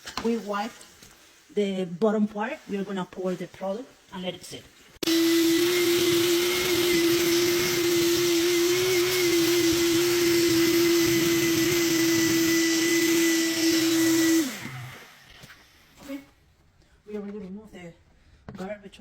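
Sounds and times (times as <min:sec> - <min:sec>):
vacuum cleaner motor whine: 0:05.0 - 0:15.4.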